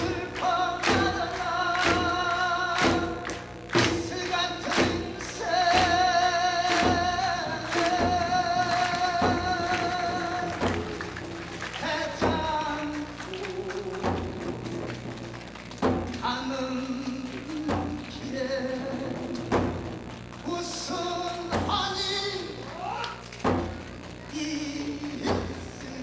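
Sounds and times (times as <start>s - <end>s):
sharp drum strikes: 0.0s - 22.6s, 23.4s - 26.0s.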